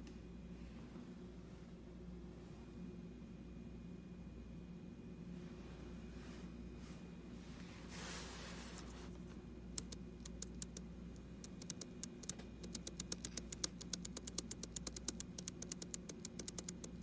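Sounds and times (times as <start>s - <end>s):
low steady hum: 0.0s - 17.0s
keyboard typing clicks: 9.8s - 17.0s.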